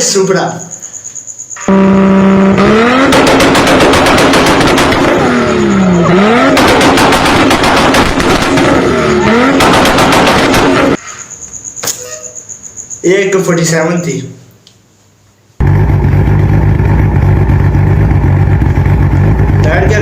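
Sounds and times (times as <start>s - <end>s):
car engine revving: 1.7s - 11.0s, 15.6s - 20.0s
exhaust pops and bangs: 2.6s - 11.0s.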